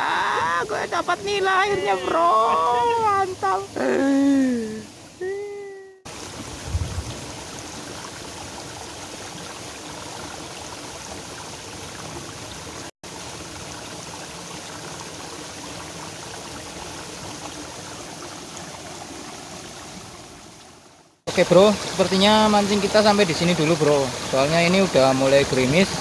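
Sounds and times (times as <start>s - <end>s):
water flowing in a ditch: 0.0s - 26.0s
low thump: 6.6s - 7.2s.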